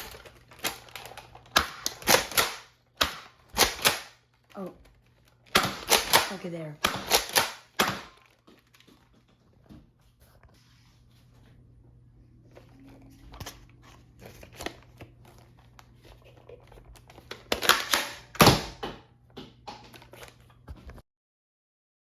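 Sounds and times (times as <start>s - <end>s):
toy blaster plastic clicks: 0.0s - 4.2s
faint low hum: 8.7s - 17.5s.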